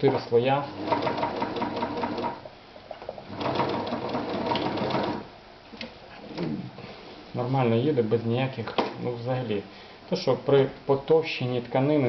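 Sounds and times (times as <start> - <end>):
sewing machine stitching leather: 0.7 - 2.4, 3.3 - 5.3.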